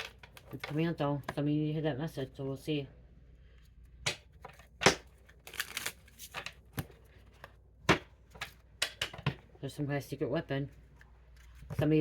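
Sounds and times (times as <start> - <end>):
cards clicking and slapping: 4.1 - 9.2.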